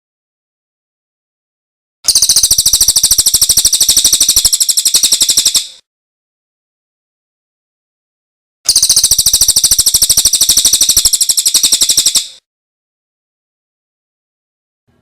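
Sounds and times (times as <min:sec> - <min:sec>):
songbird trilling high chips: 0:02.1 - 0:05.8, 0:08.7 - 0:12.4.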